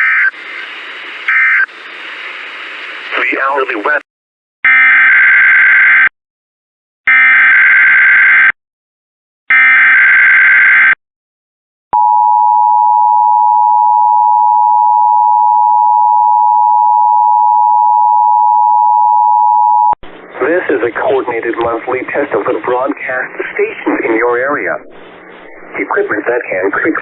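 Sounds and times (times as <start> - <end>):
digital header data bursts: 0.0 - 0.4.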